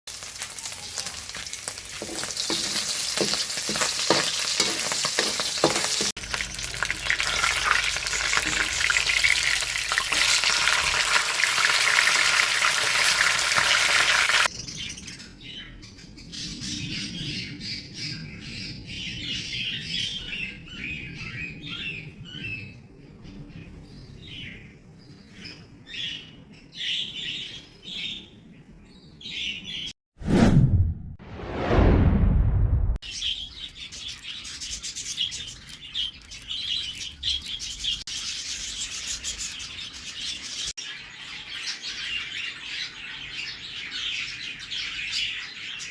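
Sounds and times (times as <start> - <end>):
food sizzling in hot oil: 0.1 - 14.5
birds chirping: 0.3 - 29.9, 33.0 - 45.9.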